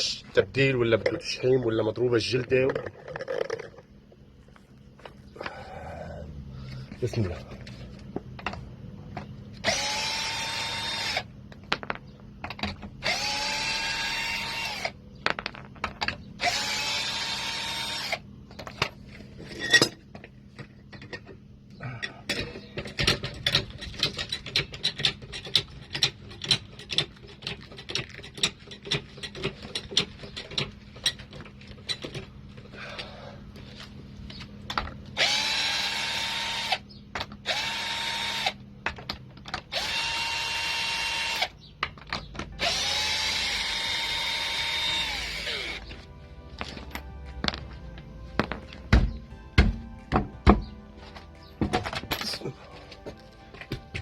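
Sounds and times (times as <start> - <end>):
power tool spinning up: 9.6 - 11.3, 13.0 - 15.0, 16.4 - 18.2, 35.2 - 36.8, 37.4 - 38.6, 39.7 - 41.5, 42.6 - 45.9.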